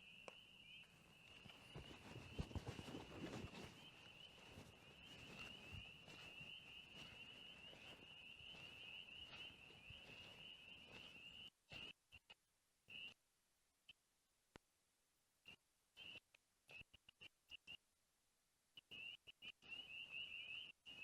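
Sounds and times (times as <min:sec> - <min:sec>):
tree frogs peeping: 0:00.0 - 0:12.0, 0:12.9 - 0:13.2.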